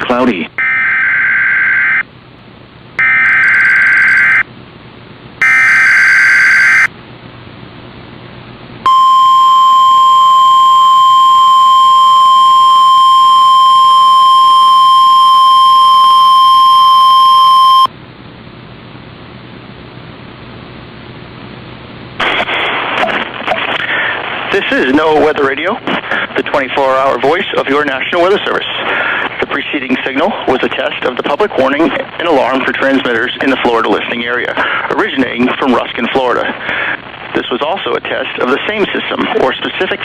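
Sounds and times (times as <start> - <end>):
steady warning alarm tone: 0.6 - 2.1, 3.0 - 4.5, 5.4 - 6.9, 8.9 - 17.9
warbling two-tone data squawk: 3.0 - 4.4, 5.4 - 6.9.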